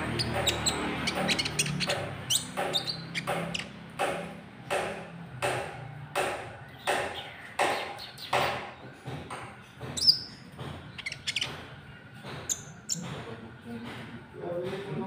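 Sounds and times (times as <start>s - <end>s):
harsh scratchy bird call: 0.0s - 3.7s
high-pitched bird chirps: 0.0s - 3.8s, 10.0s - 10.4s, 11.0s - 11.6s, 12.5s - 13.0s.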